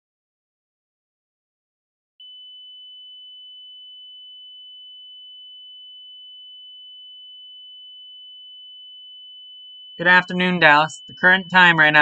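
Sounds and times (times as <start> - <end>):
high-pitched electronic tone: 10.0 - 12.0.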